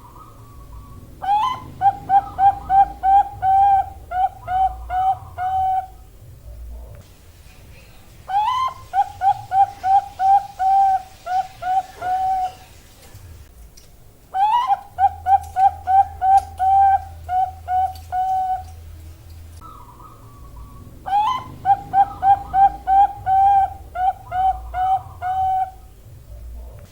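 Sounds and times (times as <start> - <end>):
dove cooing: 0.0 - 7.0, 8.3 - 12.8, 14.3 - 19.0, 19.6 - 26.9.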